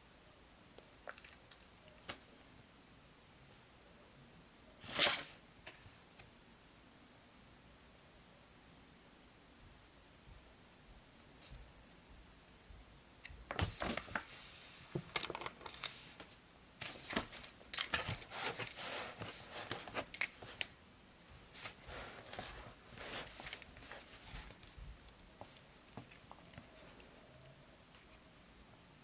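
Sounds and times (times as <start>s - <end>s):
paper and stationery handled: 13.6s - 20.6s, 21.4s - 24.8s.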